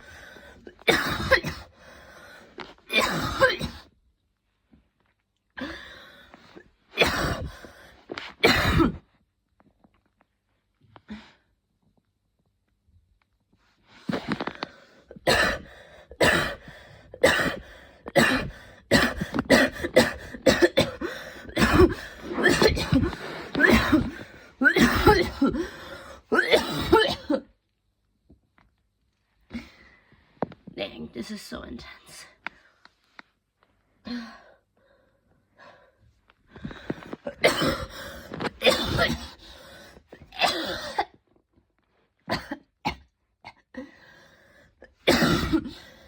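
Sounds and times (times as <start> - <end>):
woman coughing: 0.8 - 1.7, 2.9 - 3.9, 7.0 - 7.6, 8.4 - 9.0, 15.2 - 27.5, 37.3 - 38.0, 38.6 - 39.4, 40.4 - 41.2, 42.3 - 43.7, 45.0 - 45.9.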